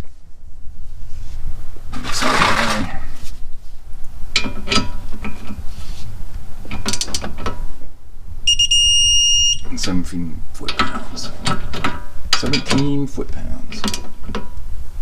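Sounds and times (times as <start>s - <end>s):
rustle of handling: 0.0s - 3.9s, 4.9s - 6.4s.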